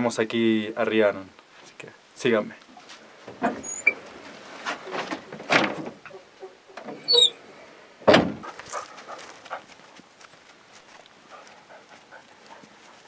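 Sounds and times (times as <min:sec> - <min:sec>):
door squeak: 0:03.3 - 0:07.5
heavy door thump: 0:04.9 - 0:06.0, 0:08.0 - 0:08.5
wooden door knocks and bumps: 0:08.1 - 0:08.5.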